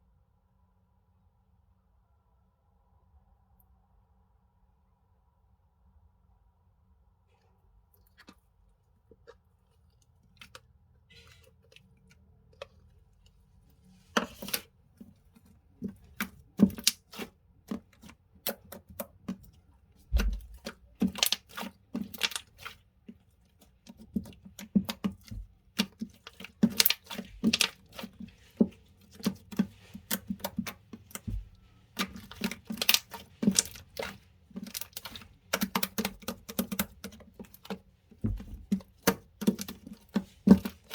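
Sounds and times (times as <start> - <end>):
slime clicking and popping: 32.0 - 37.7.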